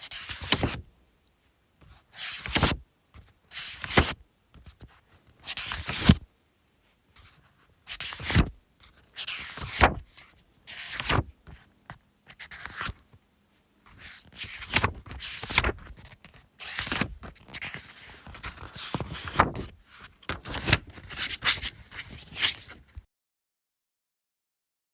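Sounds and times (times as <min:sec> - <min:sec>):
paper pages turning: 0:00.1 - 0:00.8, 0:01.9 - 0:02.8, 0:03.5 - 0:04.2, 0:05.4 - 0:06.2, 0:07.9 - 0:11.6, 0:12.3 - 0:13.0, 0:13.9 - 0:23.0.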